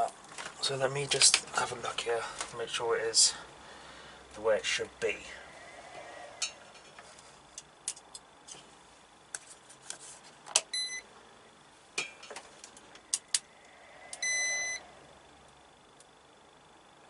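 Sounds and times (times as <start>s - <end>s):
high-pitched inverter beeps: 10.7s - 11.1s, 14.2s - 14.9s.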